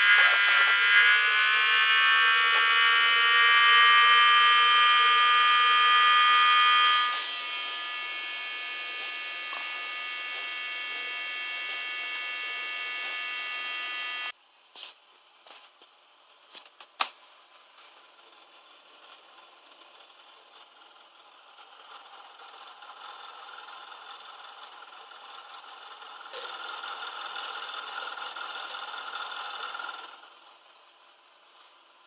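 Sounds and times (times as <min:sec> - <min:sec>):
electric buzzer shrill tone: 0:00.0 - 0:14.3, 0:26.3 - 0:30.2.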